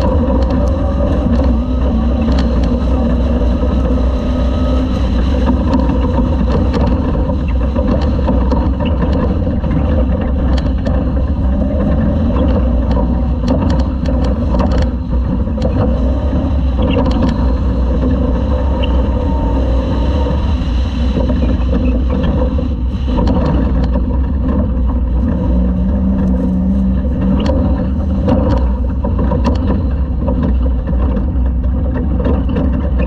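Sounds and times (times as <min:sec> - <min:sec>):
truck engine and road rumble: 0:00.0 - 0:33.0
sharp clicks and knocks: 0:05.2 - 0:16.0, 0:21.2 - 0:33.0.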